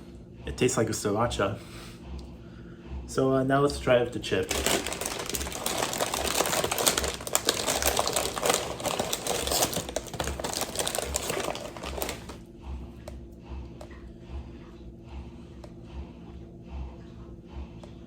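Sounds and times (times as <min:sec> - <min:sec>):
tortilla chip crunching: 0:04.4 - 0:12.4.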